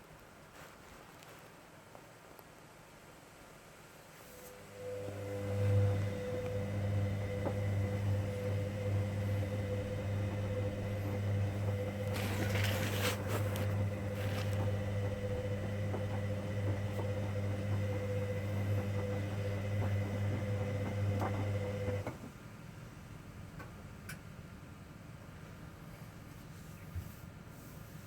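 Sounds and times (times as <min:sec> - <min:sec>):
quieter machine sounds: 0:04.5 - 0:22.2
washing machine humming: 0:04.5 - 0:25.8.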